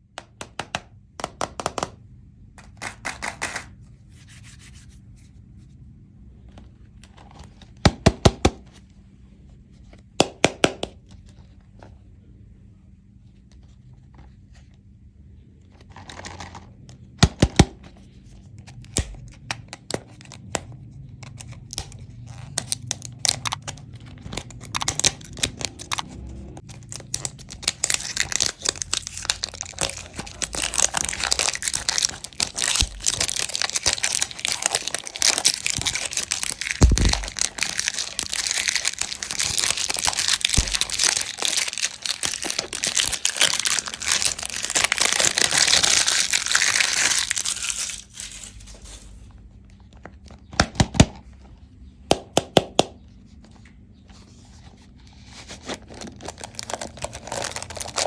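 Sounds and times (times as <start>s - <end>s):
wrapper crinkling and tearing: 21.6s - 49.2s, 55.2s - 58.0s.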